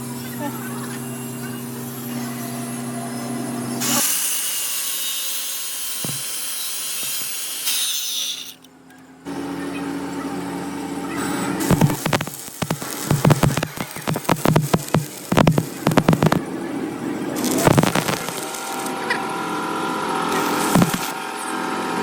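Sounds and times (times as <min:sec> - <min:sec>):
harsh hissing metalwork noise: 0:00.0 - 0:08.6, 0:11.2 - 0:16.4, 0:17.3 - 0:21.4
steady machine hum: 0:09.3 - 0:21.2.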